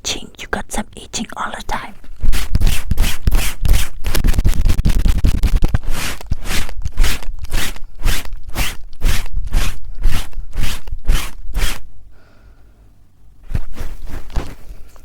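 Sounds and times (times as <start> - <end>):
scratching on microphones: 1.8 - 11.8, 13.4 - 15.0.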